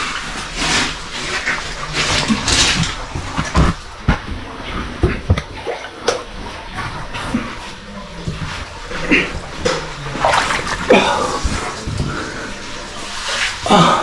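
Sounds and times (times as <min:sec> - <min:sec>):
water splashing from wading: 0:00.0 - 0:14.0.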